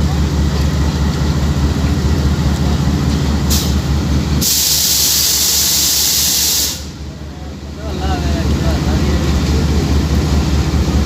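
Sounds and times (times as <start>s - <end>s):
locomotive engine rumbling: 0.0s - 11.0s
loud hiss: 4.4s - 7.0s.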